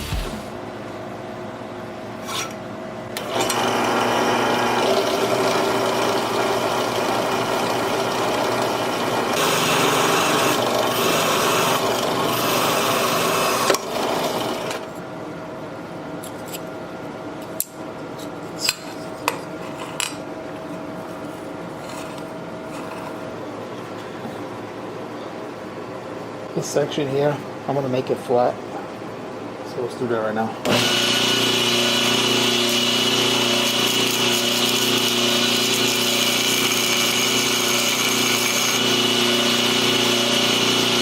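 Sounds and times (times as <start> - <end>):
power tool grinding metal: 9.4 - 14.7, 30.7 - 41.0.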